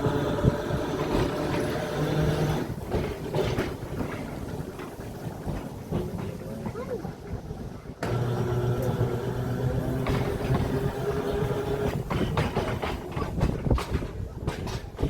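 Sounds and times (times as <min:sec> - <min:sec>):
electric tram humming: 0:00.0 - 0:15.0
wheels clicking over rails: 0:00.0 - 0:15.0.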